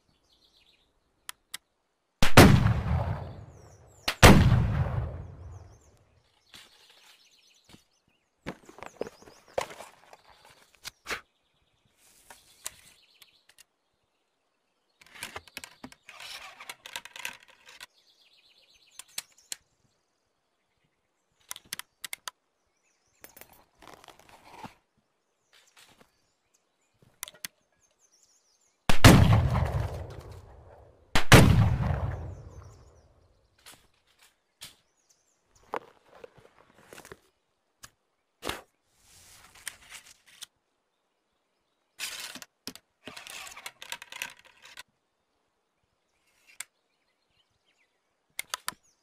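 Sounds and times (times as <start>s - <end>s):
loud shotgun shots with echo: 2.2s - 3.6s, 4.2s - 5.5s, 28.9s - 30.0s, 31.2s - 32.6s.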